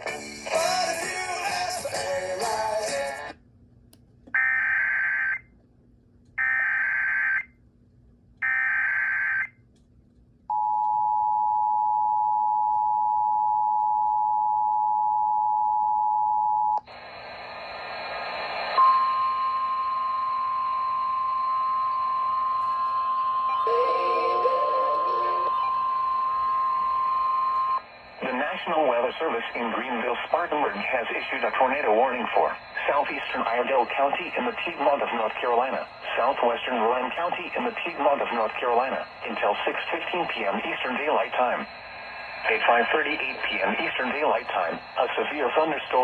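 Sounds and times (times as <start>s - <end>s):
radio hiss: 16.9s - 18.8s, 27.8s - 46.0s
steady dual-tone attention signal: 17.2s - 46.0s.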